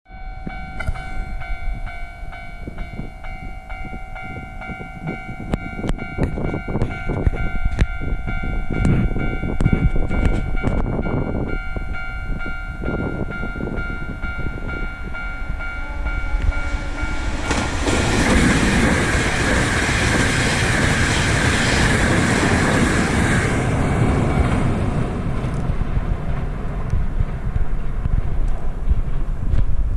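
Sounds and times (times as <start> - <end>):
level-crossing alarm ringing: 0.1 - 23.4
train passing at speed: 0.2 - 29.9
wheels clacking over rail joints: 16.5 - 29.3.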